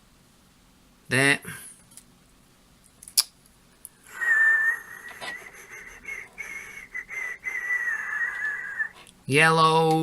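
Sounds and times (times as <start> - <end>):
person whistling one note: 4.1 - 9.0.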